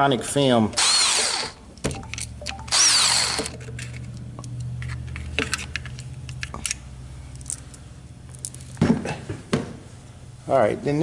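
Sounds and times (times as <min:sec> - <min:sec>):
steady low hum: 0:00.2 - 0:10.9
power drill whirring: 0:00.8 - 0:01.6, 0:02.7 - 0:03.6.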